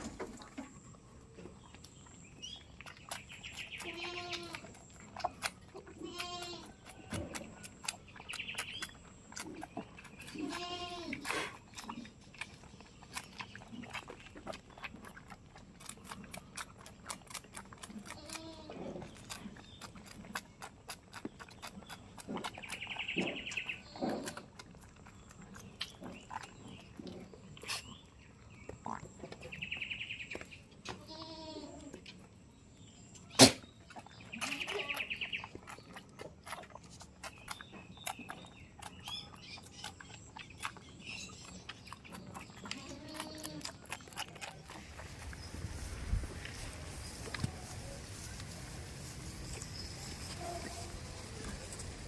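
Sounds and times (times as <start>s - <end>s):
goats bleating: 3.8s - 4.6s, 6.0s - 6.7s, 10.4s - 11.2s, 42.7s - 43.7s.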